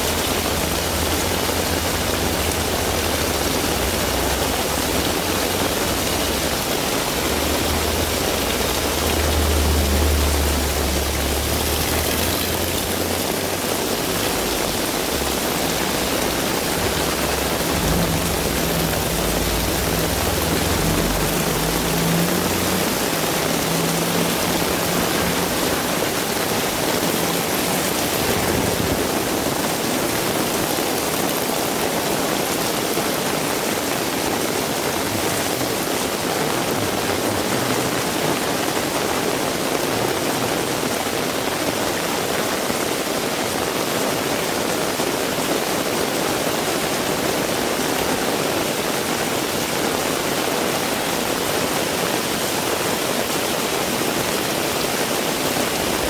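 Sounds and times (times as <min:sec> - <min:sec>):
low engine rumble: 0:00.0 - 0:40.8
heavy rain falling: 0:00.0 - 0:56.0.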